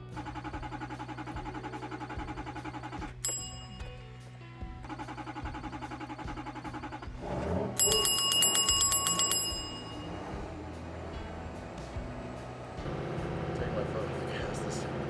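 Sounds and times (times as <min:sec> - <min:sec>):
bell ringing rapidly: 0:00.0 - 0:04.2, 0:04.8 - 0:11.2
background music: 0:00.0 - 0:15.0.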